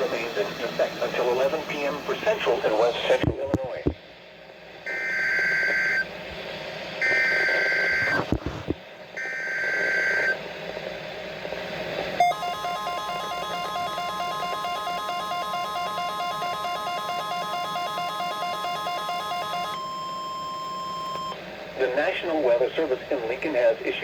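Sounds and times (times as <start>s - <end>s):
electronic beeping tune: 12.2s - 21.4s
warbling digital data tones: 12.2s - 21.4s.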